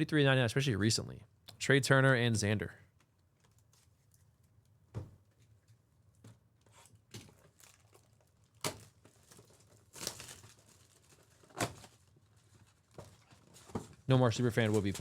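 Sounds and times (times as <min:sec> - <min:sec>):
wrappers ripping and crinkling: 0:06.7 - 0:15.0.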